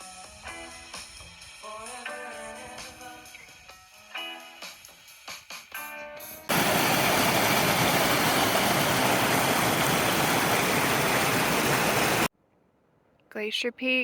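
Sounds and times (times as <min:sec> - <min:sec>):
fast-flowing water rushing: 0:06.5 - 0:12.3.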